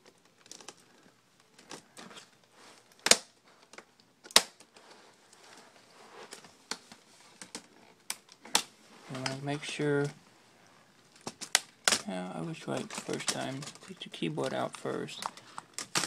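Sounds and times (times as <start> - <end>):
plastic snapping: 2.9 - 4.8.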